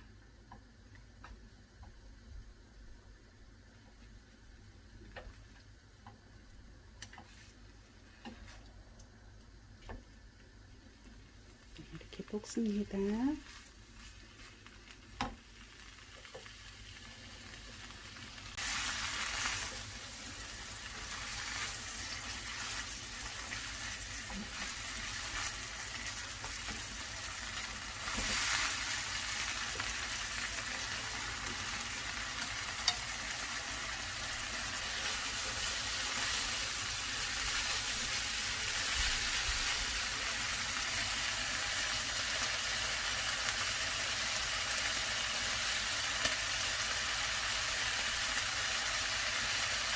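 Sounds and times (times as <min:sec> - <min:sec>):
vegetables sizzling in a frying pan: 0:10.9 - 0:49.9.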